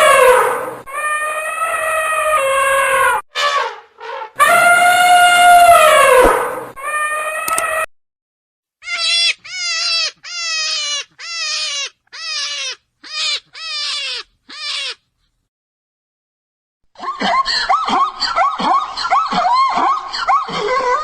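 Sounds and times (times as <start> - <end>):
animal crying: 0.0 - 7.9, 8.8 - 15.1
different animal sound: 0.0 - 7.9, 8.8 - 15.1.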